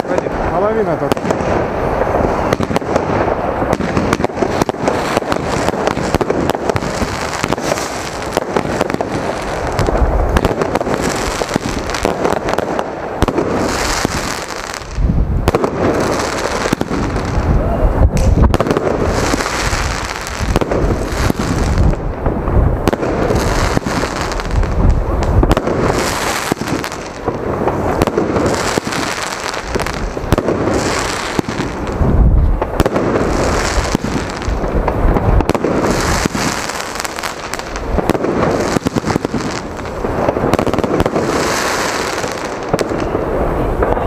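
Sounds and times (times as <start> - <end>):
firework launch shots and bangs: 0.0 - 44.0.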